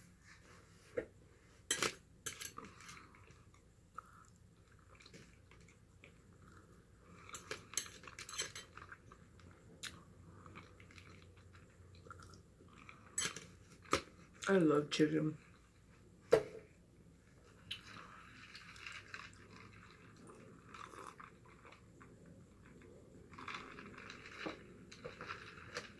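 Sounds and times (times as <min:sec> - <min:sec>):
cutlery clinking on dish: 0:01.7 - 0:02.6, 0:07.8 - 0:08.8
chewing food: 0:02.6 - 0:14.5, 0:17.5 - 0:25.9.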